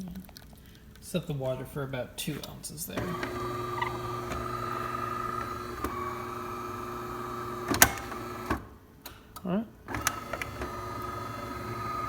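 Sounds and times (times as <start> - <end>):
espresso machine motor hum: 3.0 - 8.6, 10.1 - 12.0.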